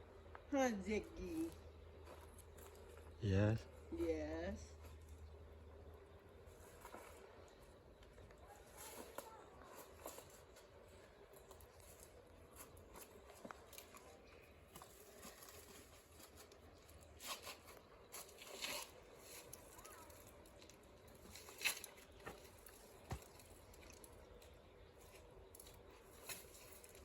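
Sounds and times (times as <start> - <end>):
faint rustles and scrapes: 6.4 - 27.0.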